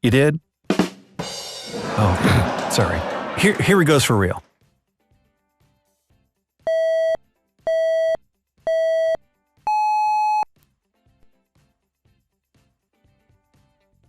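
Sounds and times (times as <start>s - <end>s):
electronic countdown beeps: 6.7s - 10.5s.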